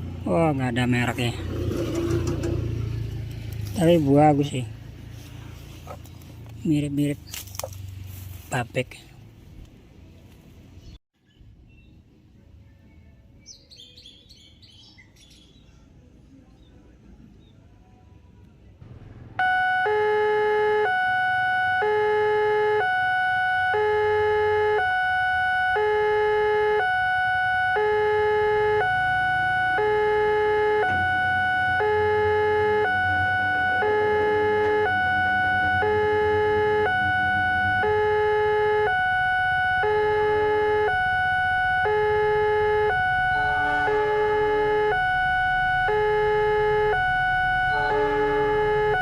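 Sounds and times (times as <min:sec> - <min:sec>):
two-tone crossing alarm: 0:19.3 - 0:49.0.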